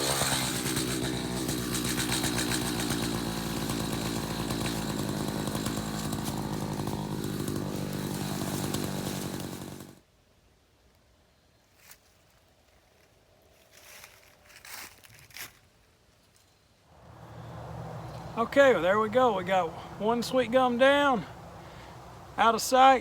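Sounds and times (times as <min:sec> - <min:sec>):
chainsaw running: 0:00.0 - 0:10.0, 0:17.0 - 0:22.5.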